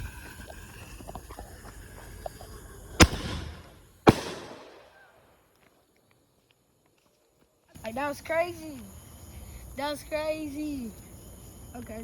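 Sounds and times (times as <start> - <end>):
firework hissing: 0.0 - 5.0
firework bangs: 3.0 - 5.2.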